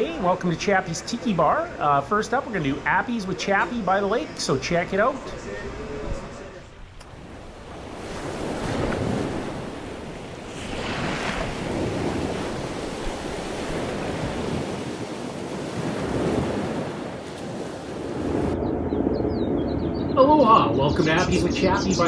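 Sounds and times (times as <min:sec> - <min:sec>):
wind buffeting microphone: 0:05.9 - 0:22.0
waves washing on shore: 0:07.0 - 0:18.6.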